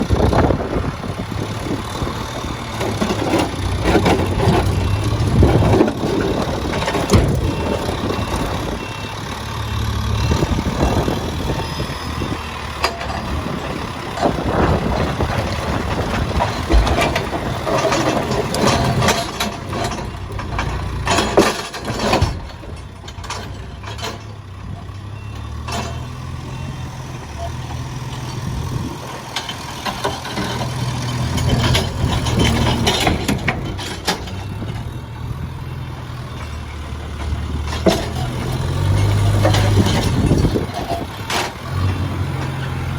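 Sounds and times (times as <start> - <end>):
diesel engine running: 0.0 - 42.9
metallic knocks and clanks: 12.8 - 24.4, 36.4 - 42.7.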